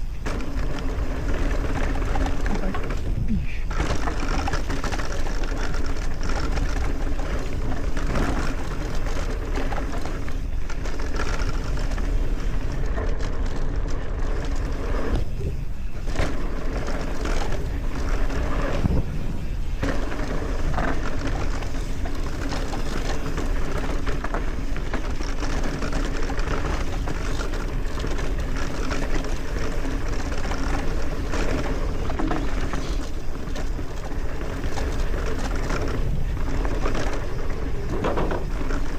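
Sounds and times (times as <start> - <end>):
wind rushing over microphone: 0.0 - 24.0
bike chain and frame rattling: 0.0 - 38.9
tyres rolling on dirt: 0.0 - 38.9.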